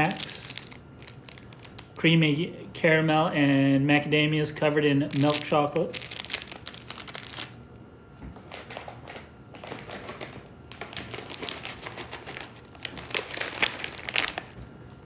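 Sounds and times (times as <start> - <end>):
packaging crinkling and clicking: 0.1 - 1.9, 5.1 - 7.6, 8.5 - 15.0.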